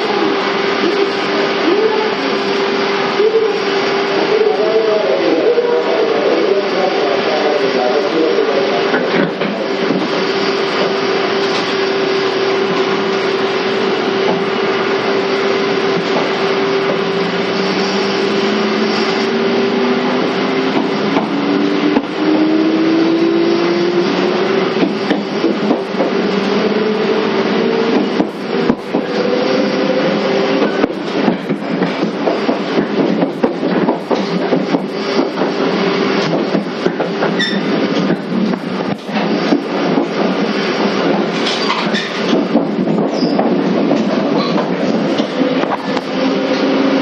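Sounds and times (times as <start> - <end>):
train wheels roaring on rail: 0.0 - 47.0.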